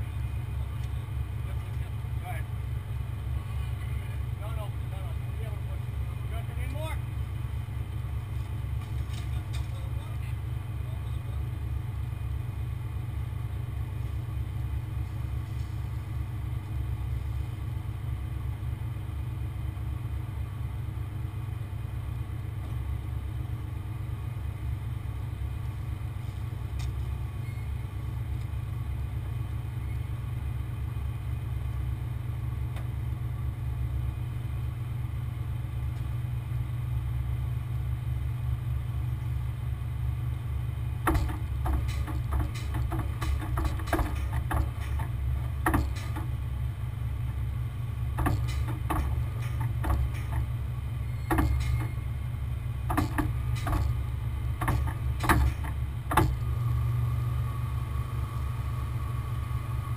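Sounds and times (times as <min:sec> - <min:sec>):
diesel truck engine droning: 0:00.0 - 0:59.9.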